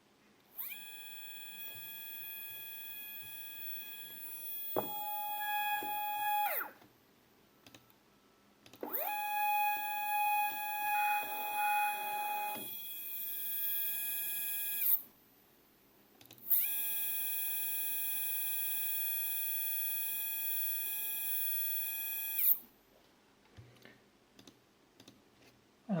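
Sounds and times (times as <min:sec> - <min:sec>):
stepper motor whining: 0:00.6 - 0:06.8, 0:08.8 - 0:15.0.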